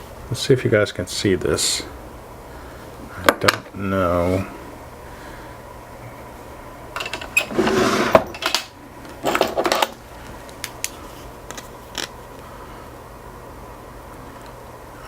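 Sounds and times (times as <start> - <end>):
padlock rattling and scraping: 7.0 - 8.6.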